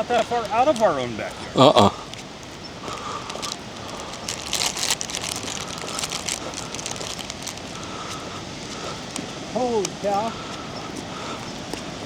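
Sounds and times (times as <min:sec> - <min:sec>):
handling noise rustles: 0:02.9 - 0:08.2.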